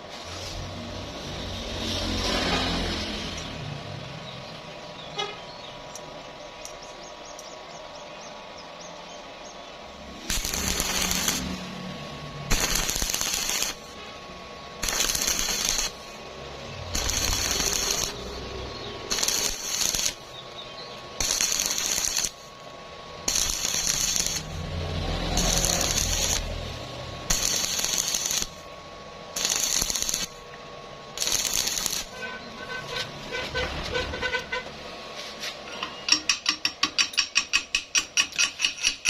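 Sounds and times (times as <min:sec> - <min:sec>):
arc welding crackling: 0:08.9 - 0:39.0.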